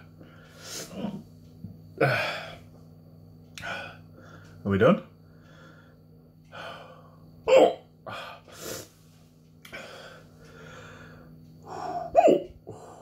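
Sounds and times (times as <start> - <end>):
man breathing: 0.2 - 1.2, 3.6 - 4.6, 5.3 - 7.3, 8.0 - 13.0
man hiccuping: 7.5 - 7.8, 12.0 - 12.6.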